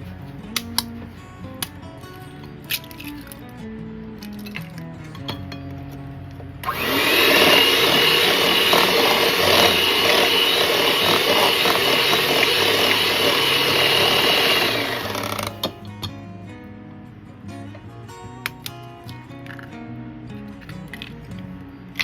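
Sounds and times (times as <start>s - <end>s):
electric hand mixer whining: 6.6s - 15.8s.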